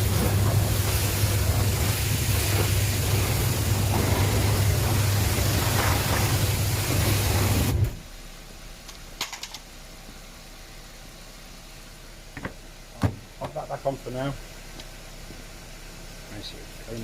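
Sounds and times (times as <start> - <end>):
steam jet hissing: 0.0 - 8.1
pump humming: 0.0 - 8.5.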